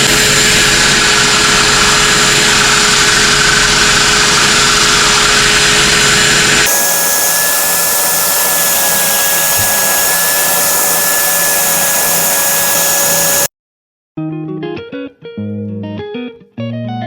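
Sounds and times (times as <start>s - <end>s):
belt sander motor whine: 0.0s - 13.5s.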